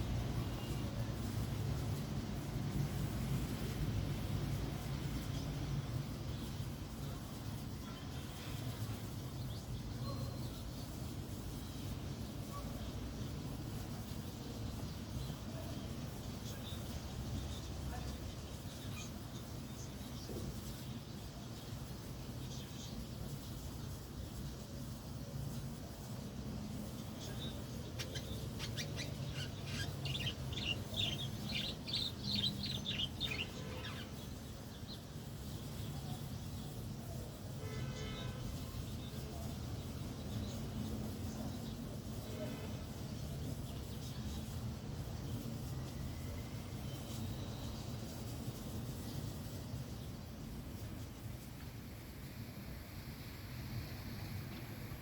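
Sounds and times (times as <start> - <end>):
faint bird chirps: 26.9 - 42.5.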